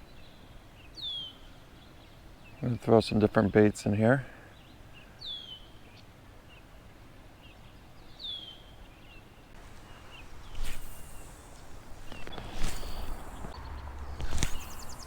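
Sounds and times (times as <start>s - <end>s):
bird chirps: 8.2s - 15.0s
bird whistling downward notes: 9.6s - 15.0s
rustling: 9.6s - 15.0s.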